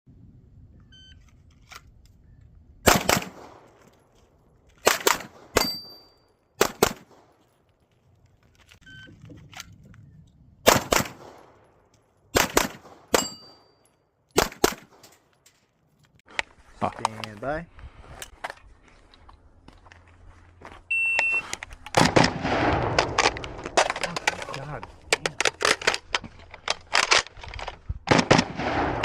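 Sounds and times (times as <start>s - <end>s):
steel target ringing: 13.2s - 13.8s
shot timer beep: 20.9s - 21.4s.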